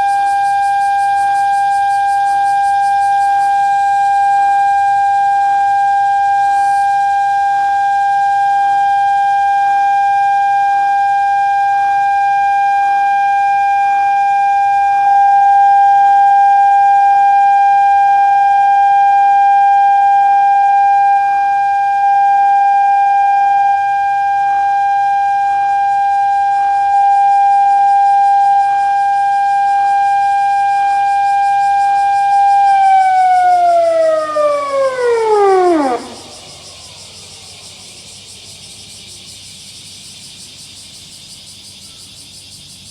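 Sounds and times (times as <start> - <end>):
electronic siren over loudspeaker: 4.0 - 36.8.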